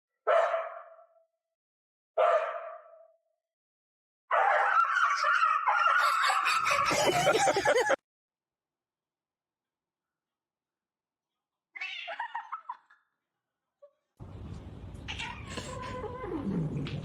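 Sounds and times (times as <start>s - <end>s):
cat meowing and yowling: 15.1s - 16.7s.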